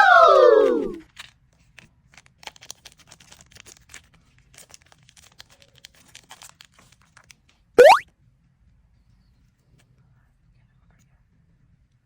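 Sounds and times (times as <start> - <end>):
rising whistle sound effect: 7.8 - 8.0.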